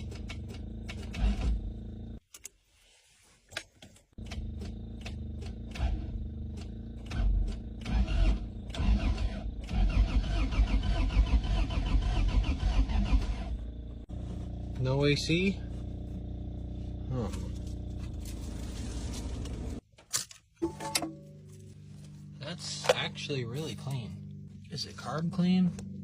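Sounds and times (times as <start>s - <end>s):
starter motor cranking engine: 0.0s - 1.9s, 4.2s - 13.6s.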